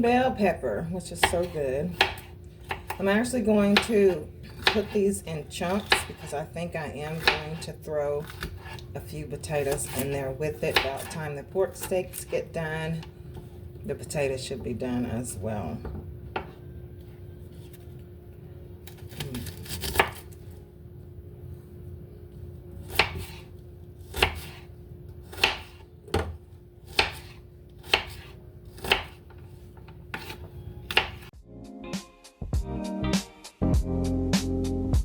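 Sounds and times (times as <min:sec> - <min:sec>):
knife chopping on cutting board: 0:01.2 - 0:03.1, 0:03.7 - 0:05.0, 0:07.1 - 0:07.6, 0:10.7 - 0:11.2, 0:19.1 - 0:20.2, 0:22.8 - 0:23.5, 0:24.1 - 0:31.3.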